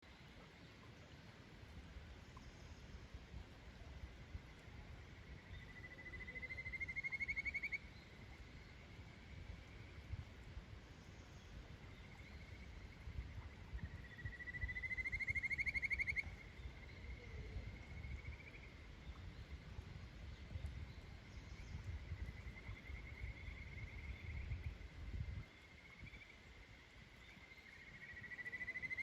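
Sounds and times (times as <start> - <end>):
frog trilling: 14.4 - 16.4.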